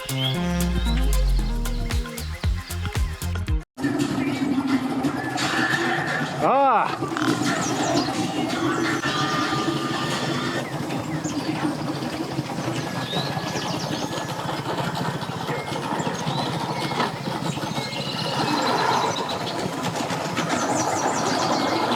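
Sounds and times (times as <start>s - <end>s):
outdoor noise: 0.0s - 21.9s
boat engine humming: 7.1s - 21.9s.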